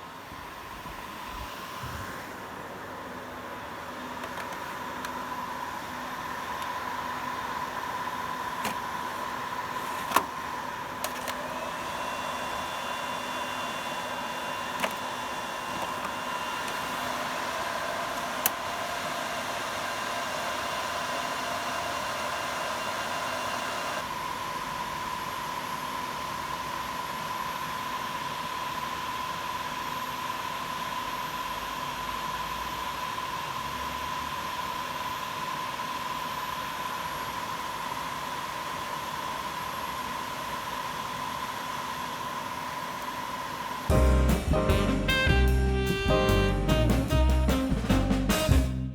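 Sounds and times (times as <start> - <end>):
cooling fans whirring: 0.0 - 48.9
higher tones: 43.9 - 48.9.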